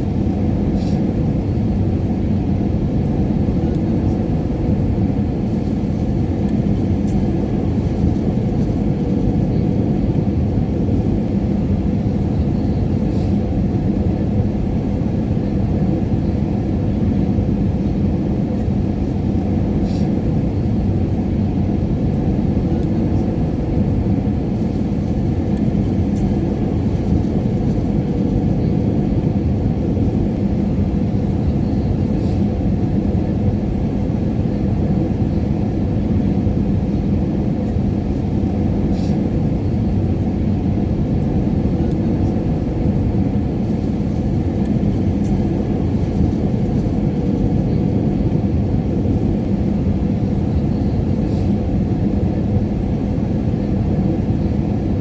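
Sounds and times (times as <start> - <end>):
faint constant hum: 0.0 - 55.0
jet airliner cabin rumble: 0.0 - 55.0.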